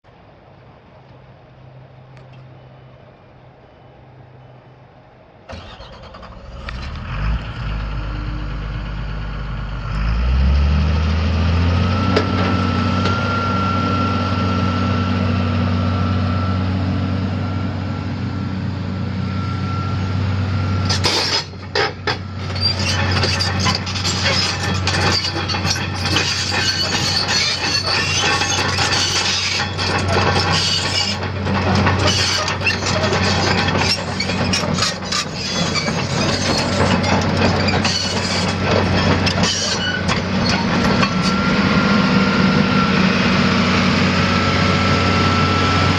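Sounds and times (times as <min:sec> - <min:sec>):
diesel engine starting and running: 0:05.2 - 0:45.9
high steady whine: 0:11.8 - 0:22.8, 0:38.5 - 0:45.9
loud rough clatter with knocks: 0:20.9 - 0:41.4.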